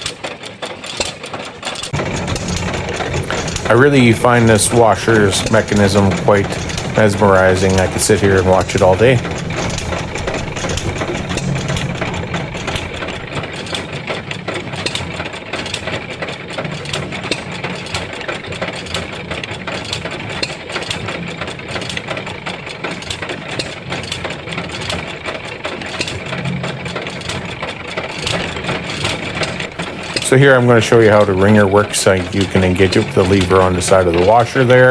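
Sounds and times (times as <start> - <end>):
engine rumble: 0.0 - 34.9
mechanical gear clicking and clatter: 0.0 - 34.9.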